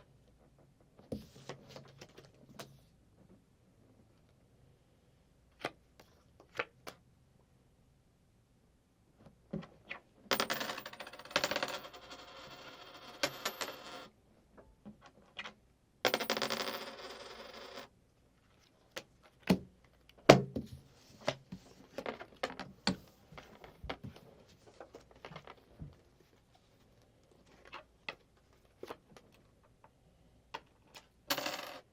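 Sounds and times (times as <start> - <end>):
coins clicking and clinking: 10.3 - 14.1, 16.1 - 17.9, 31.3 - 31.9.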